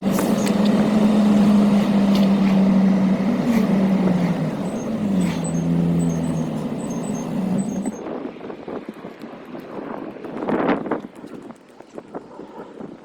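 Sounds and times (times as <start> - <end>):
car engine hum: 0.0 - 8.0
road and tyre noise: 0.0 - 12.6.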